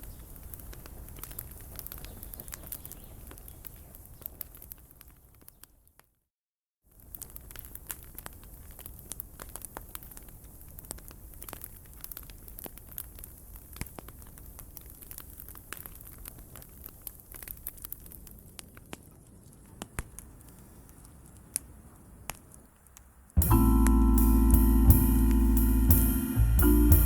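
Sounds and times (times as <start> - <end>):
campfire crackling and popping: 0.0 - 5.9, 6.9 - 27.0
jazz band playing: 23.4 - 27.0.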